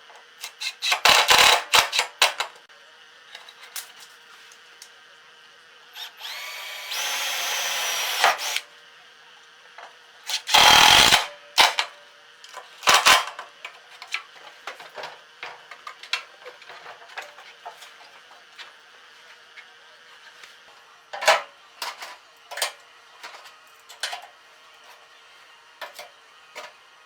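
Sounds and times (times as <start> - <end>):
power drill spinning: 0.4 - 1.6, 6.0 - 8.6, 10.3 - 11.7.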